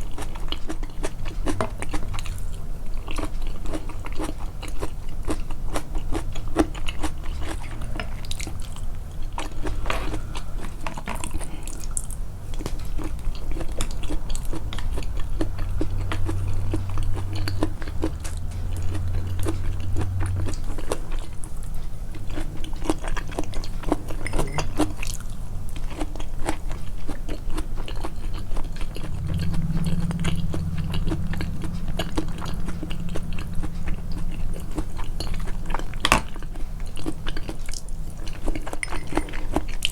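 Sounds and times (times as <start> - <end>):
chewing and crunching food: 0.0 - 39.9
low hum: 6.8 - 25.8, 27.8 - 37.5.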